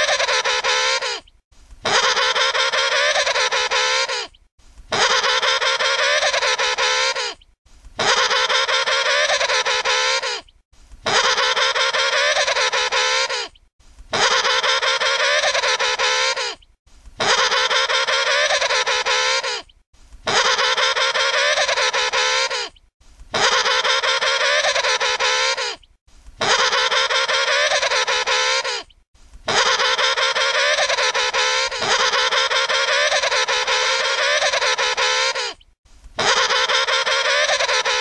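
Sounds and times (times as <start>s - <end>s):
penguin trumpeting call: 0.0s - 1.2s, 1.8s - 4.3s, 4.9s - 7.4s, 8.0s - 10.4s, 11.0s - 13.5s, 14.1s - 16.6s, 17.2s - 19.6s, 20.3s - 22.7s, 23.3s - 25.8s, 26.4s - 28.9s, 29.5s - 35.6s, 36.2s - 38.0s.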